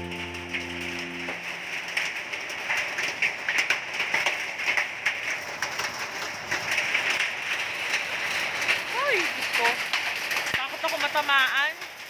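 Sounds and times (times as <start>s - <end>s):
hailstones striking hard surfaces: 1.8s - 12.0s.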